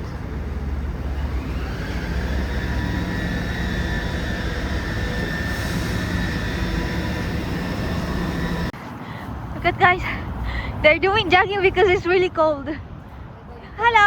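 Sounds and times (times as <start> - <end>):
loud low engine drone: 0.0 - 8.8.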